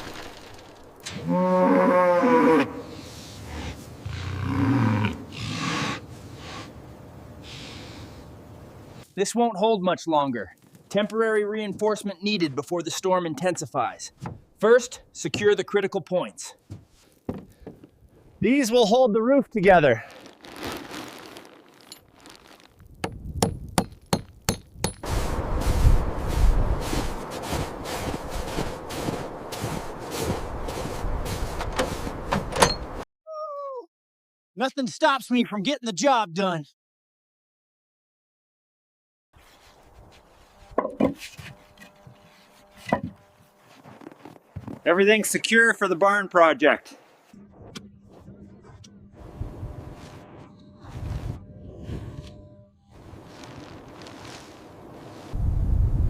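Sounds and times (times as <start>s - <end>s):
wind gusts: 24.7s - 33.0s, 54.7s - 56.0s.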